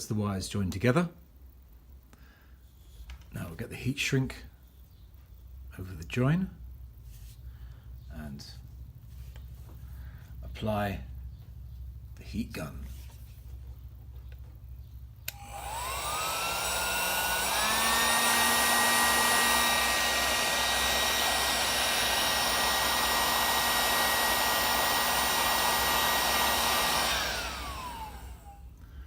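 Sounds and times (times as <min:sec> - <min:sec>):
heat gun fan whine: 0:15.2 - 0:29.0
heat gun switch click: 0:15.3 - 0:20.4.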